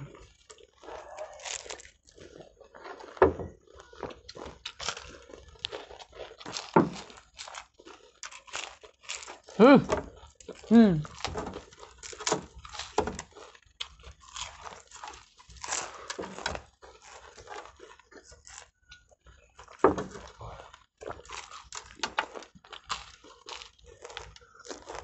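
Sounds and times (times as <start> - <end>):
people chewing pastries: 0.0 - 25.0.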